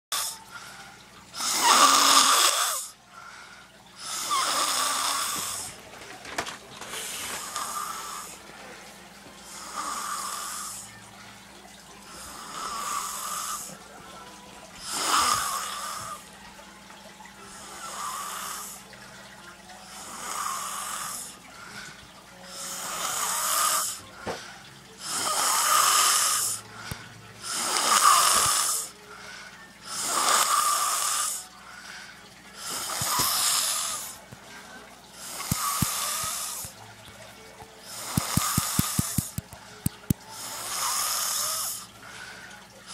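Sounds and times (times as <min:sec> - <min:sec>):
man snoring: 0:01.4 - 0:02.9, 0:04.0 - 0:05.7, 0:09.5 - 0:10.9, 0:12.1 - 0:13.8, 0:14.8 - 0:16.2, 0:17.6 - 0:18.8, 0:19.9 - 0:21.3, 0:22.5 - 0:24.0, 0:25.0 - 0:26.6, 0:27.4 - 0:28.9, 0:29.9 - 0:31.4, 0:32.6 - 0:34.2, 0:35.2 - 0:36.7, 0:37.9 - 0:39.4, 0:40.4 - 0:41.9.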